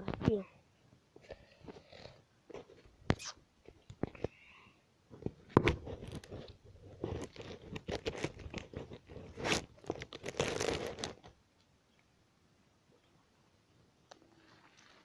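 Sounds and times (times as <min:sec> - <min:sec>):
crunching and rustling of leaves: 0:06.0 - 0:11.3.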